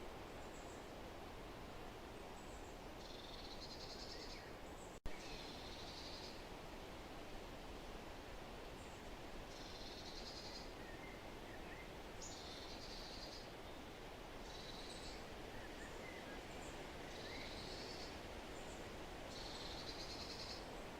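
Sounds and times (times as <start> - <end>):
steady outdoor hiss: 0.0 - 20.9.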